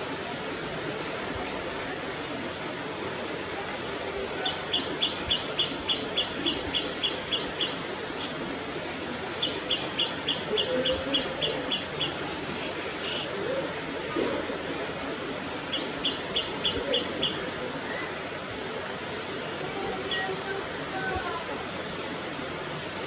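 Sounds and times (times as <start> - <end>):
low background noise: 0.0 - 23.0
songbird singing two-note phrases: 4.4 - 7.9, 9.4 - 12.3, 15.7 - 17.6.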